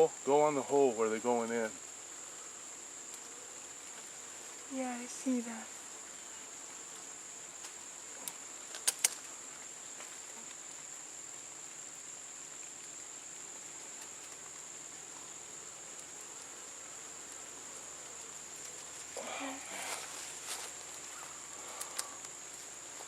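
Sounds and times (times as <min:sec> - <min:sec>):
insect chirring: 0:00.0 - 0:23.0
sharp clicks: 0:08.7 - 0:09.2.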